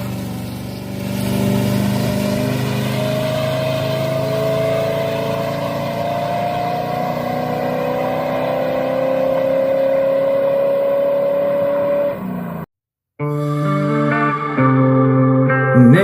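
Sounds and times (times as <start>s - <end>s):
car engine running: 0.0s - 12.7s.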